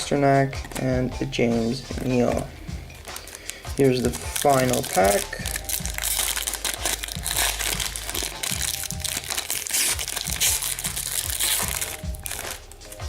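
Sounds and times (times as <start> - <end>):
background music with low beat: 0.0 - 13.0
plastic wrapper crinkling: 3.0 - 13.0.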